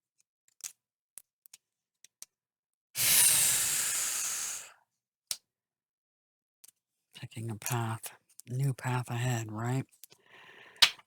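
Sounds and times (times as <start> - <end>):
hiss: 3.0 - 4.7.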